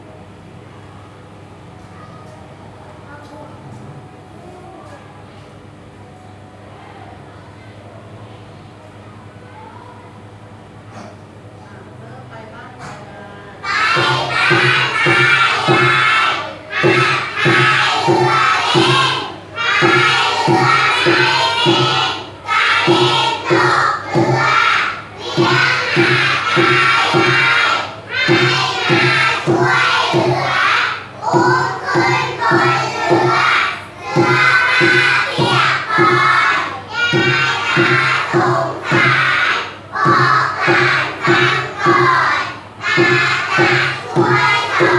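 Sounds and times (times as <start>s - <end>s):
children chanting in unison: 13.6s - 44.9s
music with steady beat: 13.7s - 44.9s.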